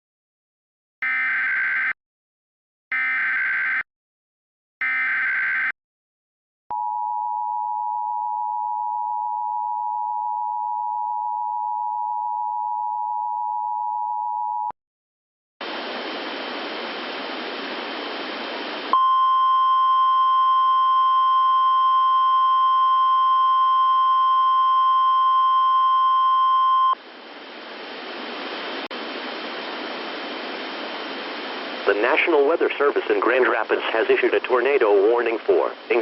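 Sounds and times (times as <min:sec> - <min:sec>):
static hiss: 0:15.6 - 0:19.0, 0:27.0 - 0:36.0.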